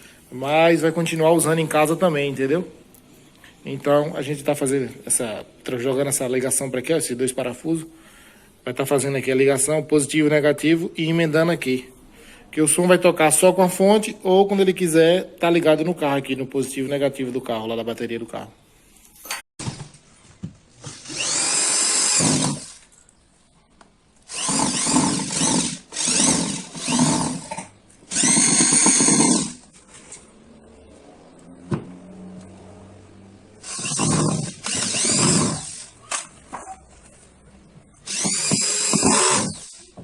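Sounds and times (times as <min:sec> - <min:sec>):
power drill driving screws: 0:20.8 - 0:22.9, 0:24.3 - 0:29.7, 0:33.6 - 0:36.3, 0:38.0 - 0:40.0.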